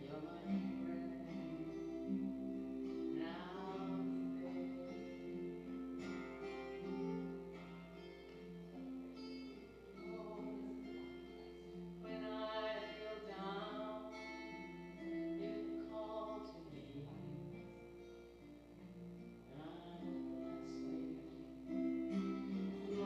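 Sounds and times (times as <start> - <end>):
woman singing: 0.0 - 7.9, 9.7 - 17.7, 19.5 - 23.0.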